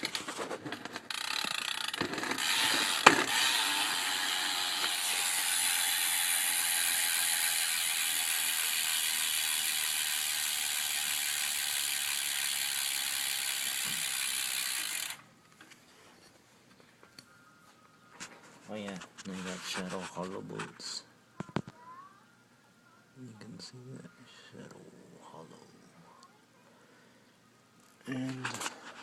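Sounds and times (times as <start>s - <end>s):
bicycle hub ratcheting: 0.7s - 15.2s.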